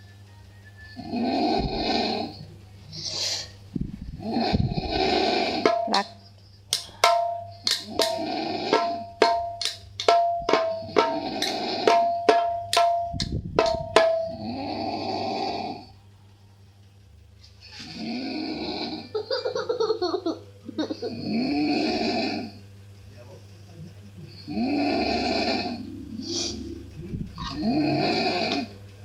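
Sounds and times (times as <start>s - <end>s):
person snoring loudly: 1.0s - 2.5s, 4.2s - 6.0s, 7.8s - 9.2s, 10.7s - 12.3s, 14.2s - 16.0s, 17.8s - 19.2s, 21.0s - 22.6s, 24.5s - 28.8s
tabla-like drum hits: 5.7s - 6.0s, 7.0s - 14.4s.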